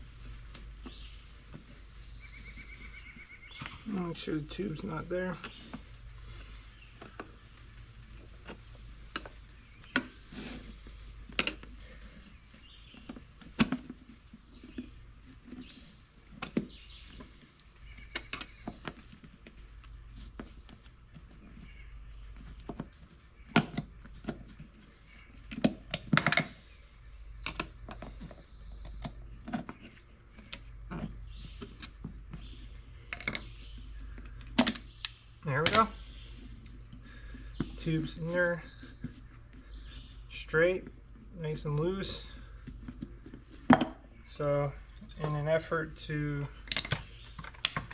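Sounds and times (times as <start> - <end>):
steady low hum: 0.0 - 47.9
clicks and knocks of hand work: 46.6 - 47.9.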